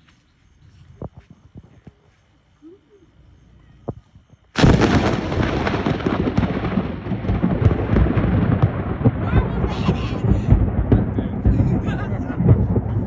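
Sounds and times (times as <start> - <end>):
loud thunderclap: 4.6 - 13.0
rumble of thunder: 4.6 - 13.0.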